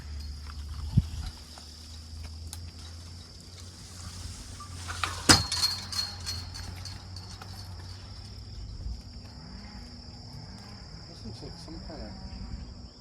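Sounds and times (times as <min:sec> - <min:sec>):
light clinks: 0:00.0 - 0:09.2
crickets chirring: 0:00.0 - 0:13.0.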